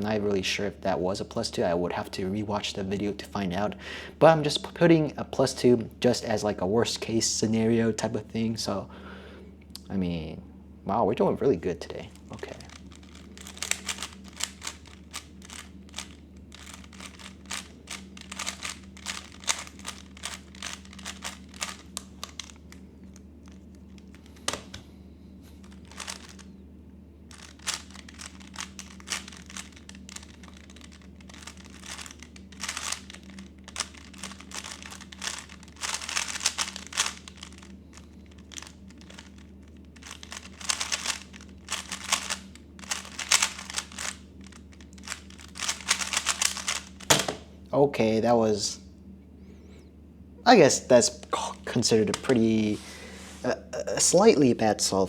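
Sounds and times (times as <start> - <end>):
puzzle cube plastic clicking: 12.6 - 24.8, 25.6 - 26.4, 27.3 - 47.4.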